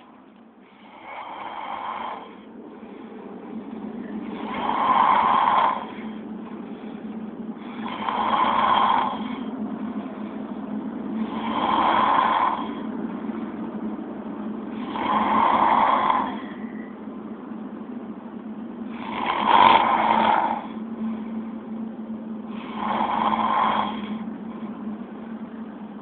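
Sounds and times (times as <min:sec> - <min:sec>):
steady low hum: 0:00.0 - 0:26.0
person snoring: 0:00.7 - 0:07.0, 0:07.6 - 0:09.5, 0:11.1 - 0:12.9, 0:14.7 - 0:16.9, 0:18.9 - 0:21.4, 0:22.5 - 0:24.2.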